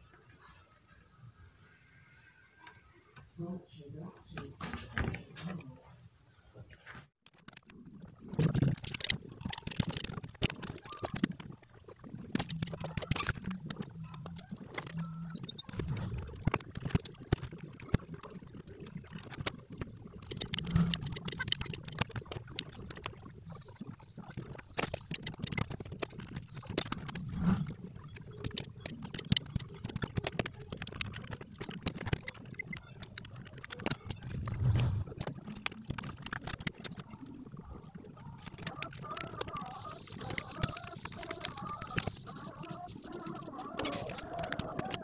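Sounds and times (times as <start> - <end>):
low hum: 34.0 - 35.2.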